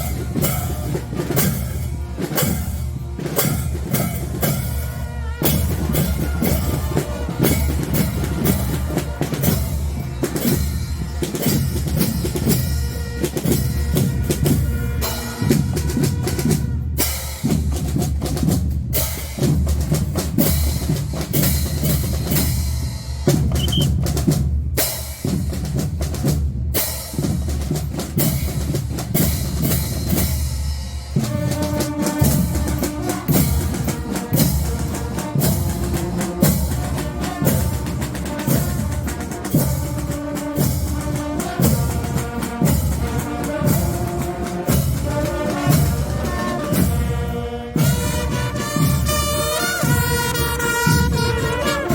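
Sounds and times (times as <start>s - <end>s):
bass drums: 0.0s - 30.6s
snare drums: 0.0s - 51.9s.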